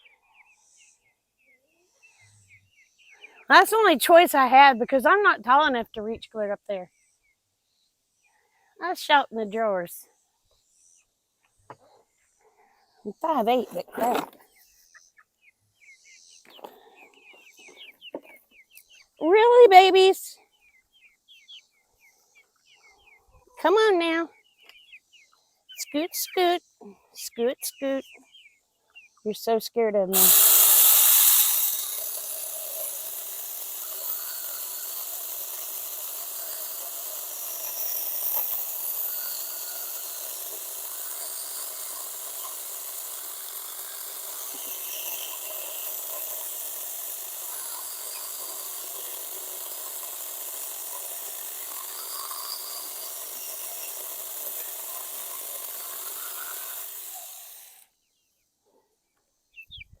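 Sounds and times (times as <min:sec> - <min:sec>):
electric chainsaw cutting wood: 0:30.1 - 0:58.0.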